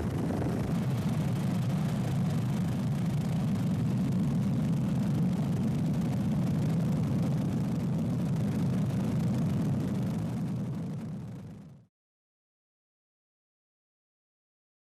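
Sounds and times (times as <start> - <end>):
low engine drone: 0.0 - 11.8.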